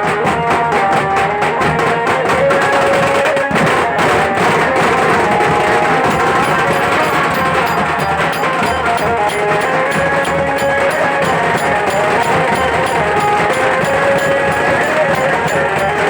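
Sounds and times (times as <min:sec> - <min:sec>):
drum band playing: 0:00.0 - 0:16.0.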